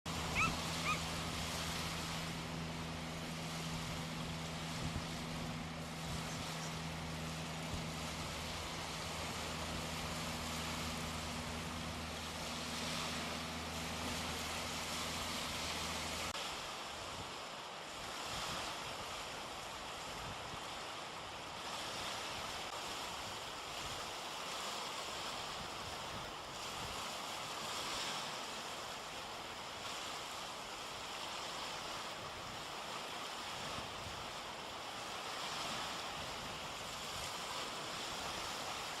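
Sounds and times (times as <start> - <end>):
wind on microphone: 0.1 - 16.3
low steady hum: 0.1 - 16.4
surf washing on shore: 0.1 - 39.0.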